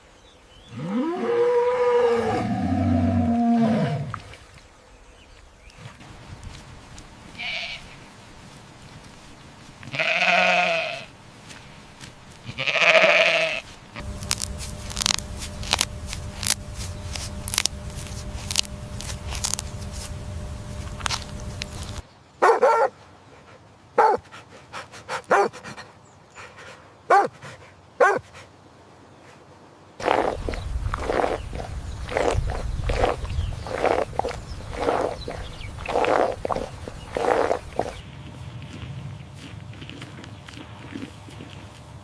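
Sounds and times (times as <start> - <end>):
steady hum: 14.0 - 22.0.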